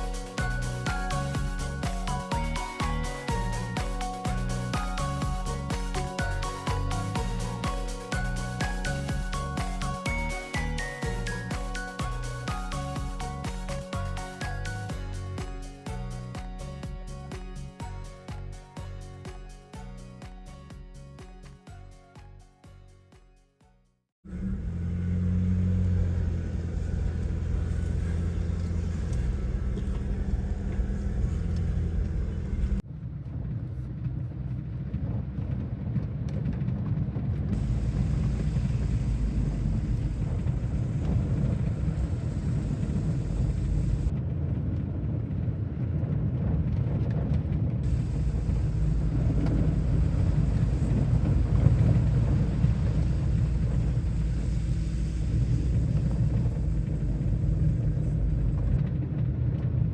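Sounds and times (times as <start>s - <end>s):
engine and tyre rumble: 24.2s - 59.9s.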